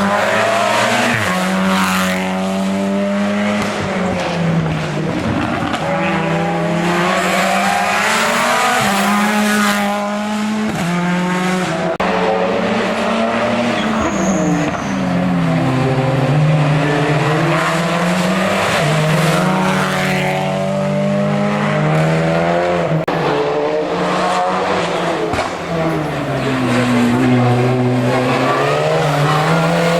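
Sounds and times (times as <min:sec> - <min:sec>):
racing car engine at full throttle: 0:00.0 - 0:29.9.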